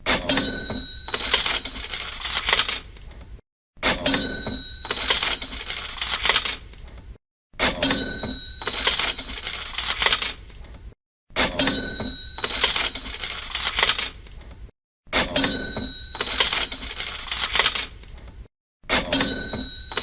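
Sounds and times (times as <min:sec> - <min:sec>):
cash register bell ding: 0:00.2 - 0:02.7, 0:03.9 - 0:06.4, 0:07.7 - 0:10.2, 0:11.4 - 0:14.0, 0:15.2 - 0:17.8, 0:18.9 - 0:20.0
coins clinking and jingling: 0:00.3 - 0:03.0, 0:04.0 - 0:06.8, 0:07.8 - 0:10.6, 0:11.6 - 0:14.3, 0:15.4 - 0:18.1, 0:19.0 - 0:20.0.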